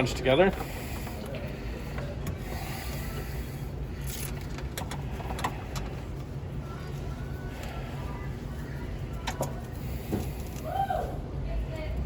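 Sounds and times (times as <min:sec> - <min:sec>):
low background hum: 0:00.0 - 0:12.0
cables rustling and clicking: 0:03.9 - 0:10.7.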